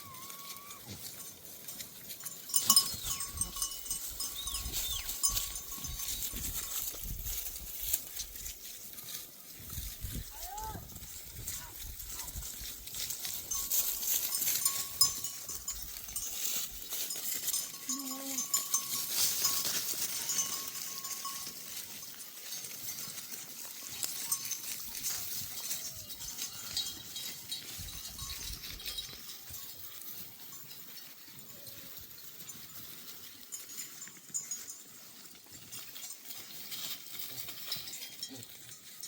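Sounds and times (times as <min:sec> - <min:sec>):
sheep bleating: 0:00.0 - 0:00.9
animal bells jingling: 0:00.0 - 0:39.0.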